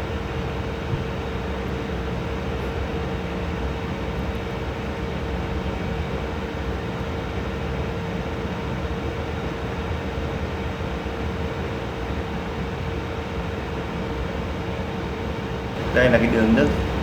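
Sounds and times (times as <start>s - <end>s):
computer fans whirring: 15.8s - 17.0s
water pump humming: 15.8s - 17.0s.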